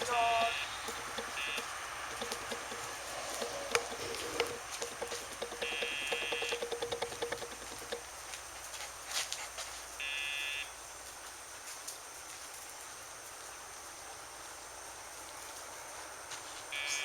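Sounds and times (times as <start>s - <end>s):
pager buzzing: 0.0s - 8.0s
faint clicks: 0.0s - 8.4s.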